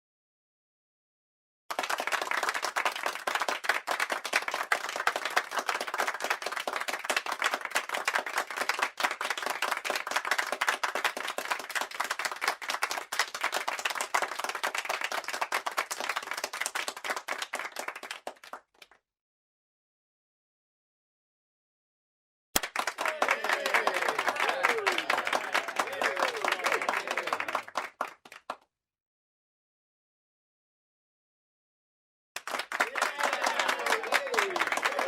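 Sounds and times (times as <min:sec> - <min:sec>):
crowd applauding: 0:01.7 - 0:18.9, 0:22.6 - 0:28.6, 0:32.4 - 0:35.0.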